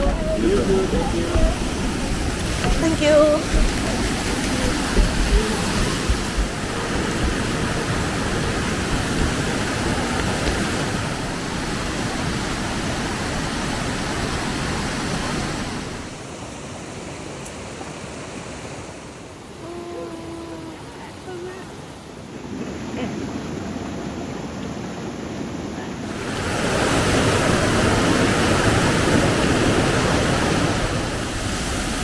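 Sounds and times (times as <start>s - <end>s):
water rushing: 0.0s - 32.0s.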